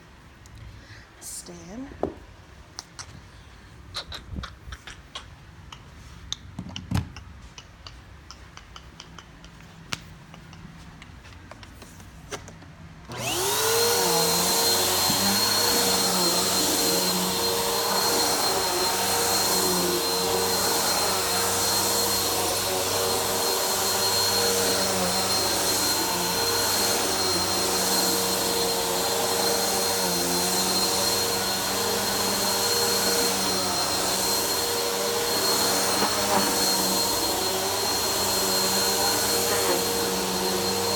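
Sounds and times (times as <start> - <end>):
vacuum cleaner whining: 13.1 - 40.9.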